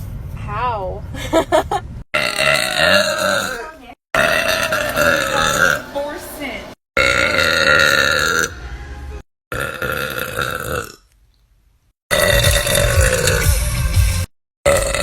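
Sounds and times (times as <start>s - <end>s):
women burping loudly: 2.2s - 5.9s, 7.0s - 8.5s, 9.5s - 11.0s, 12.1s - 13.5s, 14.7s - 15.0s.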